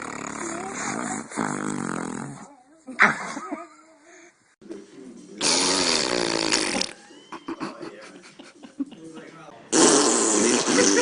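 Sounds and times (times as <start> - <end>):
fart sound: 0.0 - 2.5, 5.4 - 7.0, 9.7 - 11.0.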